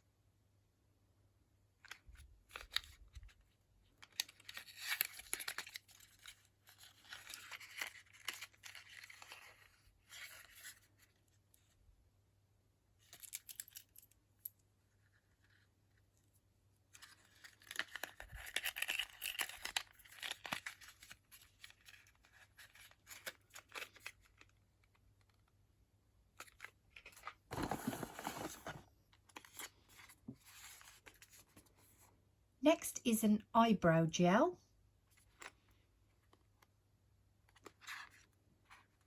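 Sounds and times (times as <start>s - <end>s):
packaging crinkling and tearing: 4.0s - 10.8s, 17.0s - 25.5s, 26.4s - 28.8s.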